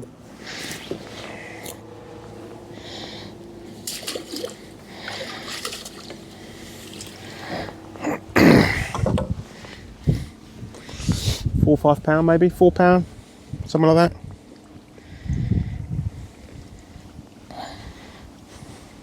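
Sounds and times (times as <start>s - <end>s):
water splashing and dripping: 3.8s - 7.4s.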